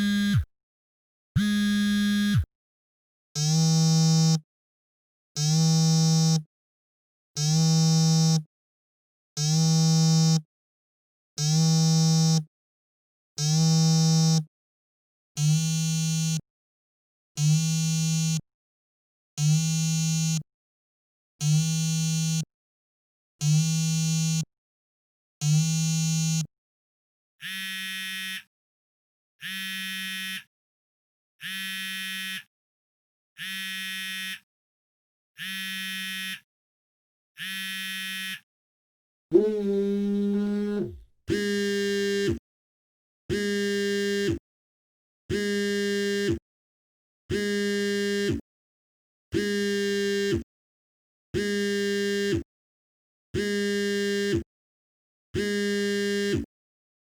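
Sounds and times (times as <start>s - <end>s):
phone vibrating buzz: 0.0s - 0.5s, 1.4s - 2.5s, 27.4s - 28.5s, 29.4s - 30.5s, 31.4s - 32.5s, 33.4s - 34.5s, 35.4s - 36.5s, 37.4s - 38.5s, 39.3s - 42.4s, 43.3s - 44.4s, 45.4s - 46.4s, 47.4s - 48.4s, 49.4s - 50.4s, 51.4s - 52.4s, 53.4s - 54.4s, 55.4s - 56.4s.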